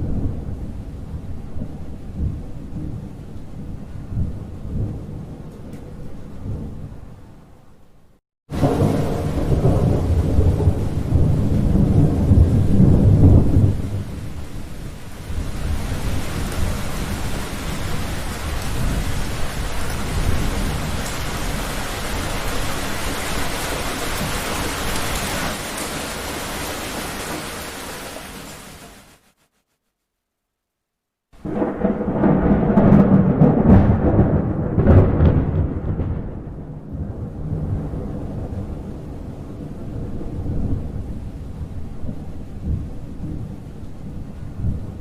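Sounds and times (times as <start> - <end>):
thunder rumbling: 0.0 - 7.6, 8.5 - 28.6, 31.4 - 45.0
heavy rain hissing: 8.5 - 29.4.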